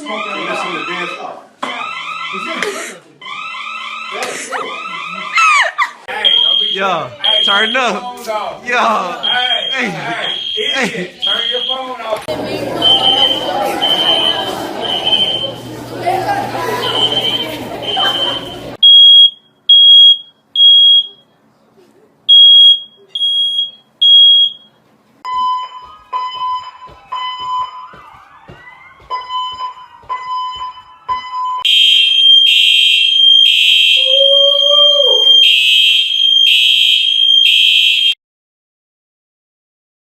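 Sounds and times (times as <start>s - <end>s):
loud high alarm tone: 3.2s - 5.4s, 6.1s - 8.0s, 8.7s - 11.9s, 12.8s - 15.6s, 16.8s - 21.1s, 25.3s - 38.2s
high-pitched alarm beeps: 6.1s - 8.0s, 9.1s - 11.8s, 12.8s - 15.6s, 16.8s - 21.2s, 22.3s - 24.7s, 25.3s - 28.0s, 29.0s - 38.1s
lower alarm beep: 6.1s - 8.0s, 9.1s - 11.8s, 12.8s - 15.6s, 16.8s - 21.2s, 22.3s - 24.7s, 25.3s - 27.9s, 29.1s - 38.2s.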